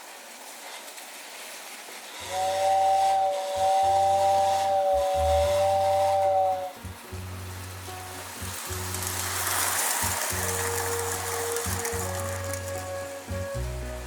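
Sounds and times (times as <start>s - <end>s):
toy train running: 0.0s - 14.0s
toy train whistle: 2.1s - 7.0s, 8.9s - 14.0s.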